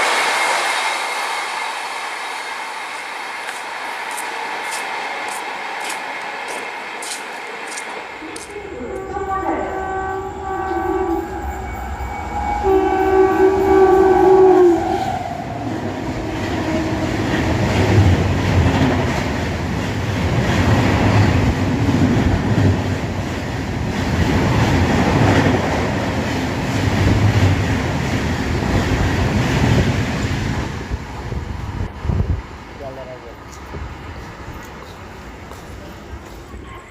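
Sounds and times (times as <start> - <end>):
express train rumbling past: 0.0 - 36.9
locomotive horn blasts: 8.3 - 18.0.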